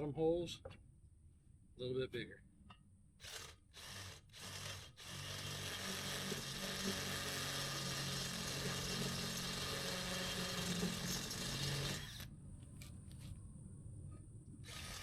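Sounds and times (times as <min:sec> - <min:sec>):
electric drill boring: 0:03.2 - 0:12.3, 0:14.6 - 0:15.0.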